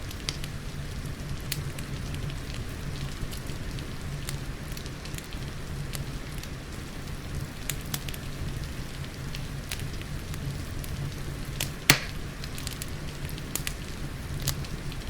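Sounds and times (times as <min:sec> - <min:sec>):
fireplace crackling: 0:00.0 - 0:15.0
steady rain: 0:00.0 - 0:15.0
sharp pop from fire: 0:11.6 - 0:12.8.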